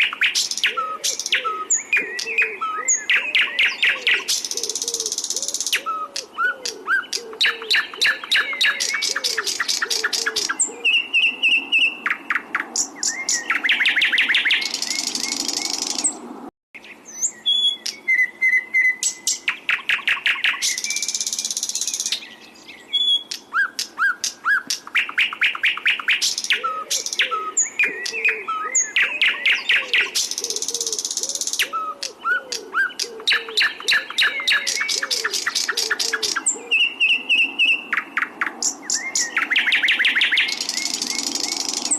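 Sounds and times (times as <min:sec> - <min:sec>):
songbird chirps and whistles: 0:00.0 - 0:16.2, 0:16.8 - 0:41.9
low dove-like coos: 0:00.6 - 0:11.9, 0:26.5 - 0:37.8.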